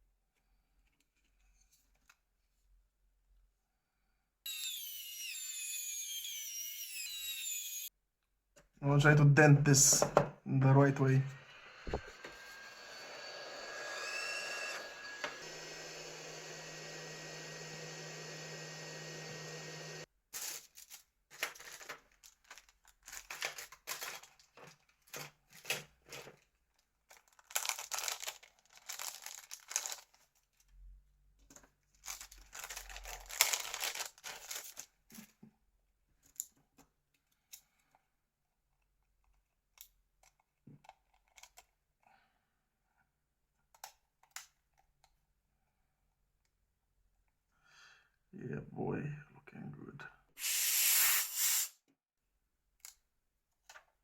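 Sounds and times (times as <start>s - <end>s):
plastic crinkling and tearing: 20.4s - 26.5s, 27.1s - 30.6s, 31.9s - 35.2s.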